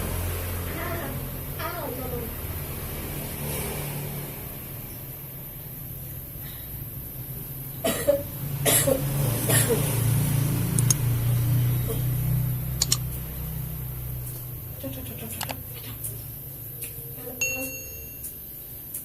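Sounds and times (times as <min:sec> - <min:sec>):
person coughing: 0:07.8 - 0:09.8.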